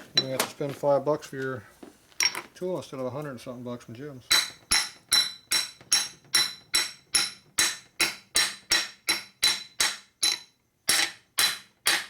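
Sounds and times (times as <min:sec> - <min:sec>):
hammer tapping on steel pipe: 0:04.3 - 0:12.0.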